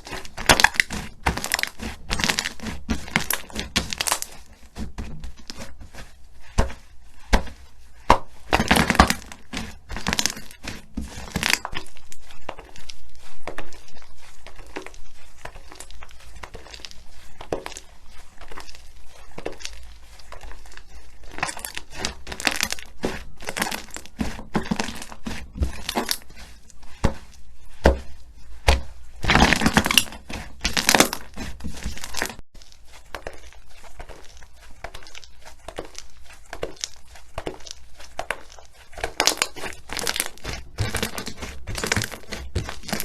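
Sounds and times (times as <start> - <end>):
slime crackling and popping: 0.0 - 43.0.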